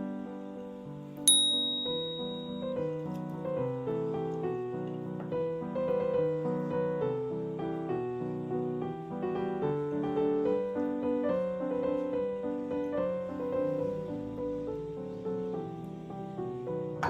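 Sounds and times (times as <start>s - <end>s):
piano melody: 0.0s - 17.0s.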